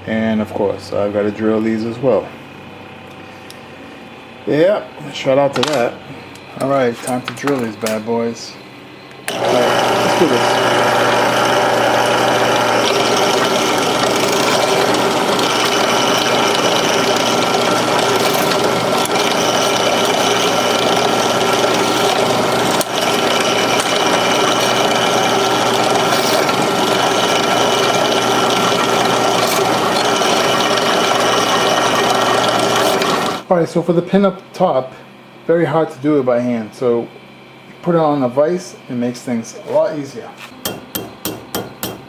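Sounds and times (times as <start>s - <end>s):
electric drill motor running: 9.3s - 33.5s.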